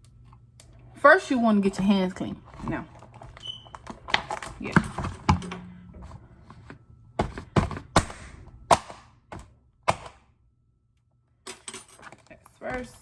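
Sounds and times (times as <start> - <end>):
kitchen things knocking and clacking: 4.0 - 8.1.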